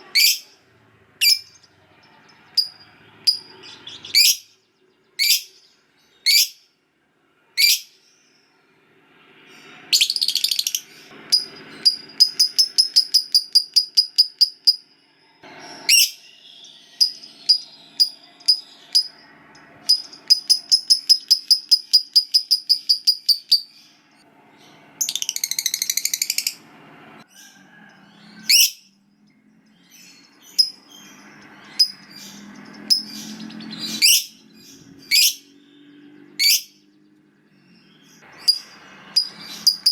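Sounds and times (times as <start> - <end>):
lovebird chirps: 0.0 - 0.6, 1.2 - 6.7, 7.6 - 8.5, 9.6 - 26.6, 27.8 - 28.9, 29.7 - 39.9
rapid high bird chatter: 0.0 - 6.6, 15.4 - 24.0, 29.8 - 35.8, 37.6 - 39.9
harsh bird screech: 15.4 - 16.9.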